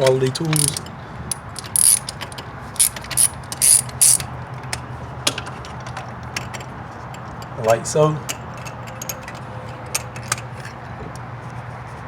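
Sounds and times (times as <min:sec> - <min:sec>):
hand ratchet clicking: 0:00.5 - 0:04.2.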